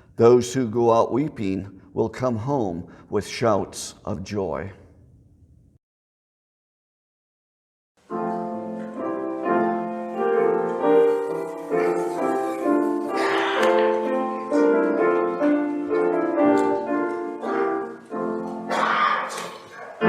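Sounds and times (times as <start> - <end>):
piano playing slow chords: 8.0 - 19.0.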